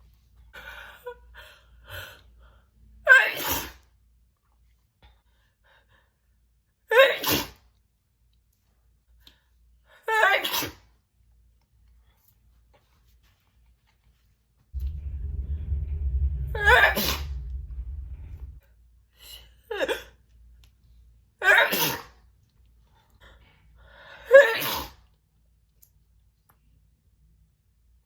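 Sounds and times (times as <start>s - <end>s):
woman sneezing: 3.1s - 3.8s, 6.9s - 7.6s, 10.2s - 10.8s, 21.4s - 22.1s, 24.3s - 25.0s.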